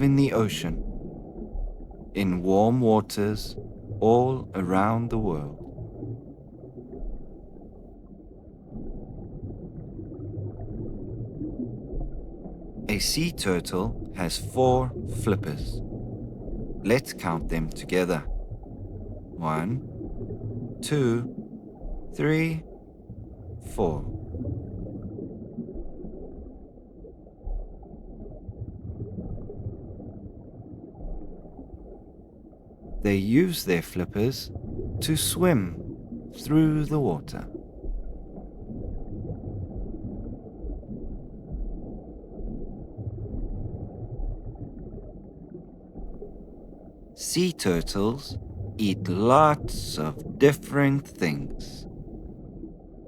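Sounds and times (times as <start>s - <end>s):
faint gurgling: 0.0s - 1.0s, 2.1s - 6.3s, 12.8s - 21.4s, 22.0s - 22.8s, 23.6s - 25.1s, 33.0s - 37.6s, 47.2s - 52.0s
underwater rumble: 0.0s - 53.0s.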